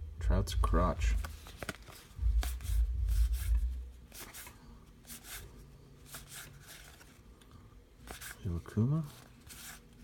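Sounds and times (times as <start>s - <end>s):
cards flipped by hand: 1.2s - 5.4s, 6.0s - 8.4s, 9.0s - 10.0s.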